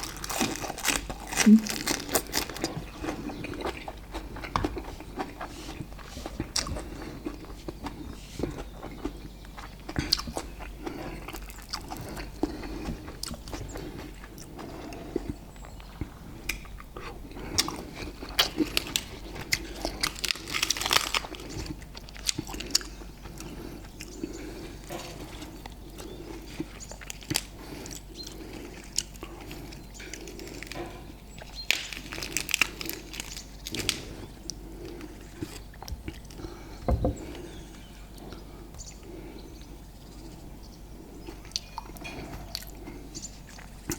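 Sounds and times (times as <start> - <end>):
chewing and biting food: 0.0 - 40.3, 41.2 - 43.9.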